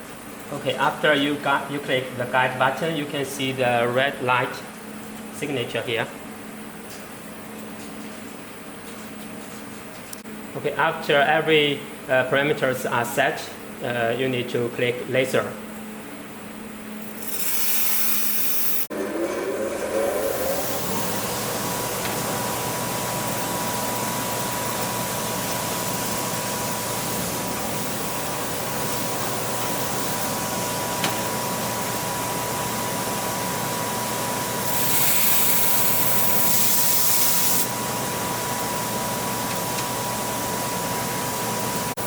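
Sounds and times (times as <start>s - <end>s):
machine hiss: 17.1s - 18.9s, 33.8s - 37.8s
thin steady whine: 20.2s - 40.5s.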